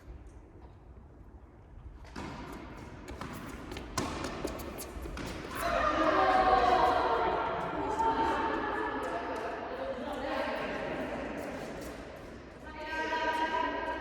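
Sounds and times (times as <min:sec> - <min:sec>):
players' voices: 0:05.5 - 0:12.0.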